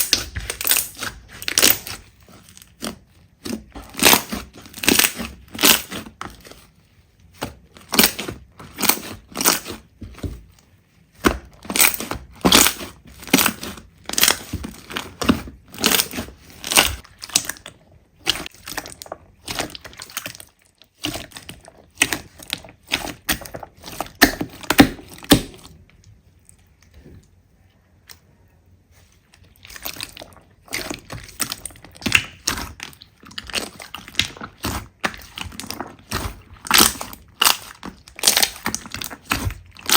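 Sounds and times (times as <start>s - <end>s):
slime crackling and popping: 0.0s - 6.6s, 11.1s - 25.7s, 29.6s - 39.9s.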